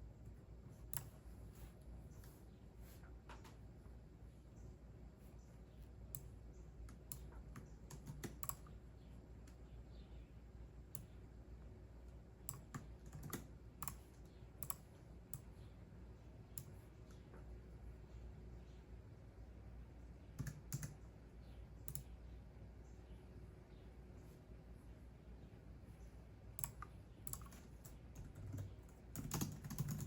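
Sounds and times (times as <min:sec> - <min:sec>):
faint keyboard typing: 0:00.1 - 0:04.0, 0:05.7 - 0:10.1, 0:10.8 - 0:18.8, 0:20.0 - 0:22.4, 0:25.5 - 0:30.0.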